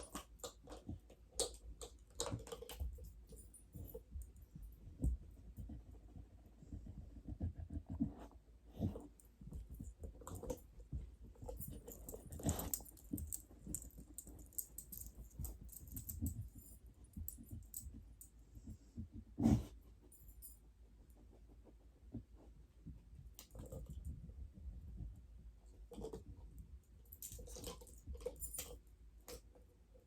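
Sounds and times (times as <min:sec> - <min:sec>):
dog claws clicking on hard floor: 0:00.0 - 0:05.8, 0:09.6 - 0:18.0.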